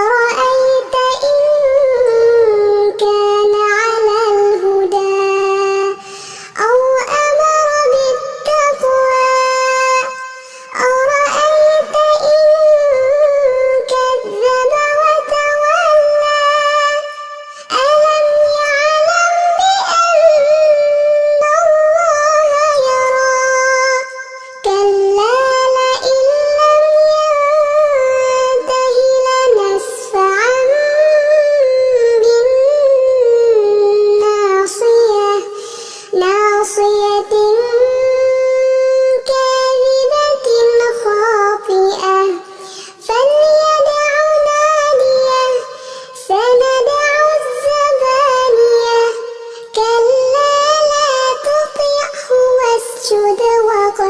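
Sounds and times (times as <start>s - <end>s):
person chanting recitation: 0.0s - 6.0s, 6.6s - 17.1s, 17.7s - 35.4s.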